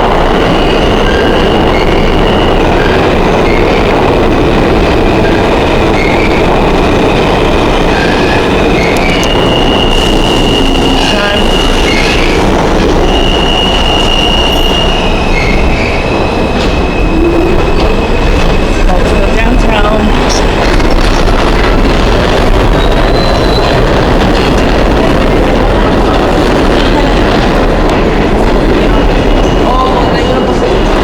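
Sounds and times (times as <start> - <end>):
steel wheels squealing on rails: 0.0 - 31.0
subway train rumbling: 0.0 - 31.0.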